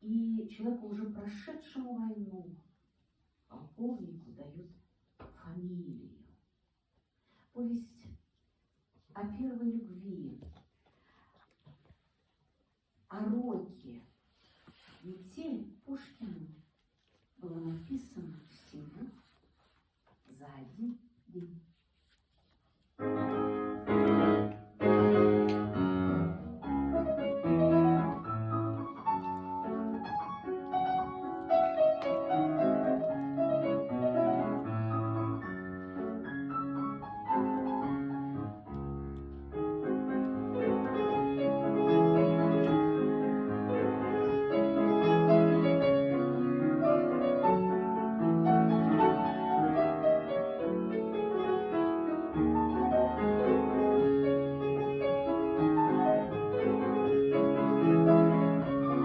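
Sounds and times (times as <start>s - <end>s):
solo piano classical piece: 22.4s - 59.0s.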